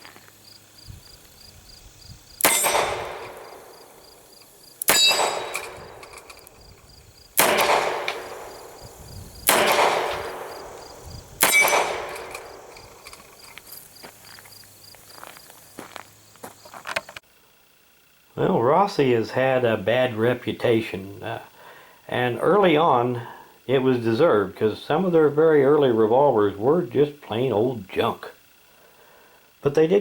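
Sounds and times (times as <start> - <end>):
revolver shots: 2.4 - 4.0, 4.8 - 6.3, 7.4 - 13.0.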